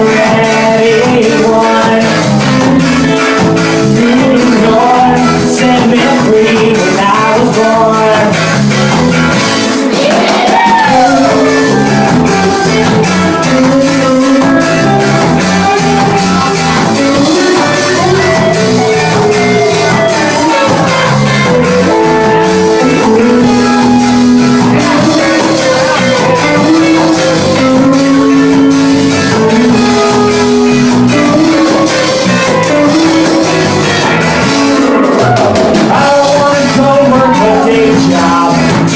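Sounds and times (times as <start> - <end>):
ska band playing live: 0.0 - 38.9.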